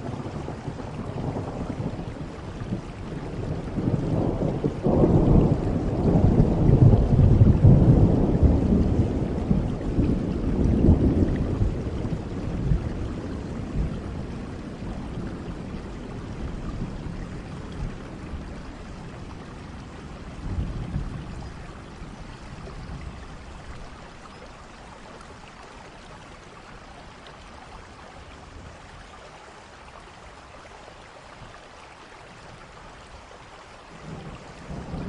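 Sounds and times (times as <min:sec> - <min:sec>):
rolling thunder: 0:00.0 - 0:24.5, 0:34.0 - 0:35.0
steady rain: 0:00.0 - 0:35.0.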